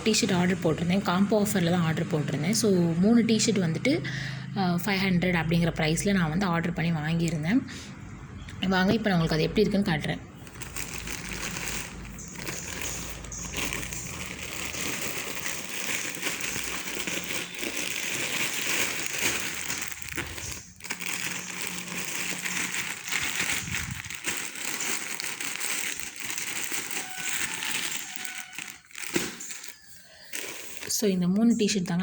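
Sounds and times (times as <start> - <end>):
packaging crinkling and rustling: 10.4 - 32.0.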